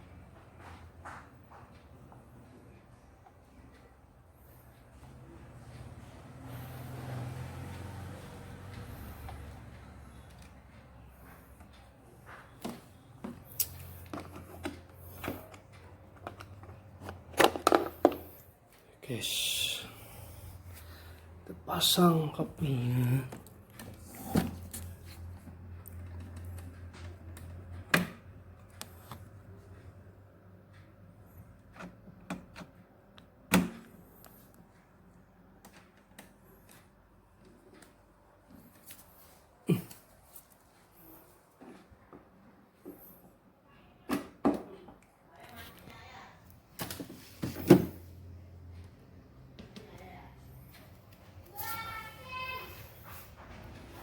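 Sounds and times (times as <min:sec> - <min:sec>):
hard objects clicking and knocking: 0:12.6 - 0:18.4.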